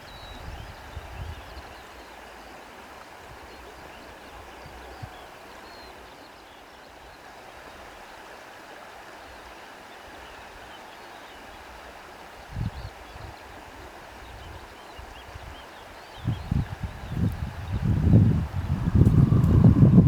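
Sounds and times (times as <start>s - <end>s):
stream rushing: 15.4s - 20.0s.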